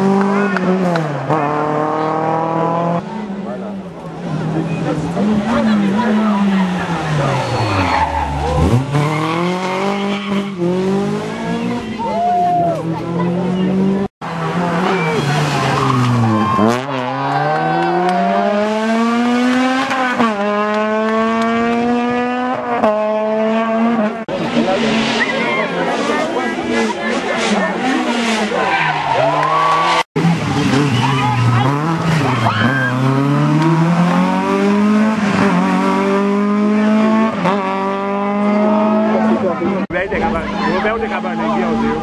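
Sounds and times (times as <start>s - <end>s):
rally car engine accelerating: 0.0s - 42.0s.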